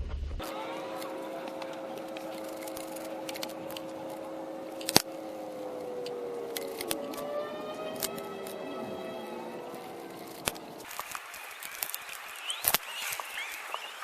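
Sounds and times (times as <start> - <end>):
sharp clicks: 0.4 - 7.3, 9.7 - 14.0
sustained tones sliding lower: 0.4 - 14.0.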